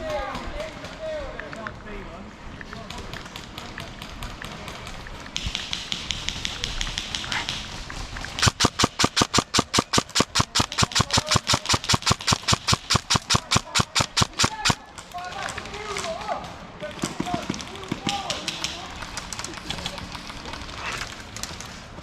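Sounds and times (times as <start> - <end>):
distant airsoft fire rattle: 2.9 - 16.2
airsoft gun firing: 5.4 - 7.8, 8.4 - 15.0.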